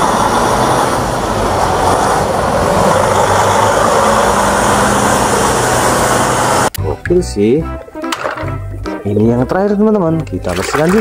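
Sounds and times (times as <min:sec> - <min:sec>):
water spray rushing: 0:10.5 - 0:11.0.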